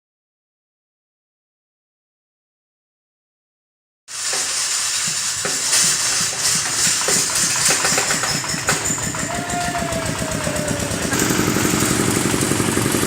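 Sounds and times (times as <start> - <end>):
high hiss: 4.1 - 13.0
hammermill machine running: 4.2 - 13.0.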